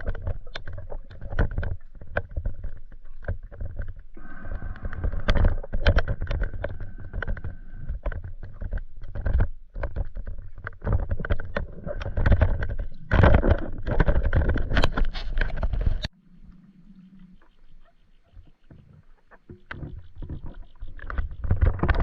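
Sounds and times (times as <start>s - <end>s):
water sloshing and splashing: 0.0s - 22.0s
faint hum: 4.2s - 5.8s, 16.0s - 19.3s.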